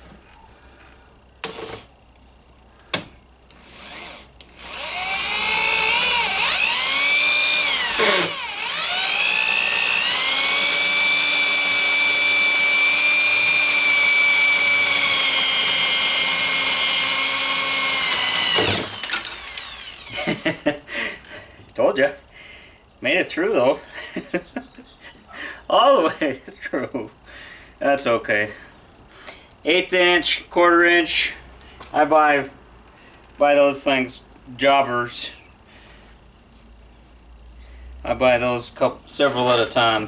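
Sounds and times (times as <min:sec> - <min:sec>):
electric drill whining: 0:03.5 - 0:20.4.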